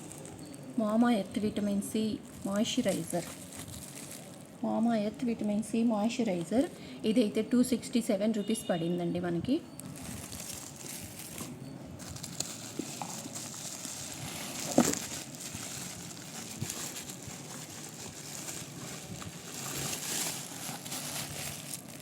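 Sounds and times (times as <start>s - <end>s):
packaging rustling and clicks: 9.8s - 22.0s.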